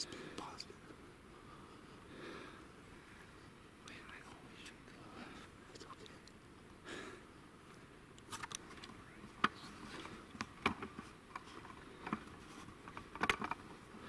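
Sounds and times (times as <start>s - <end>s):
faint background noise: 0.0s - 14.0s
light clicks and knocks: 8.2s - 13.7s.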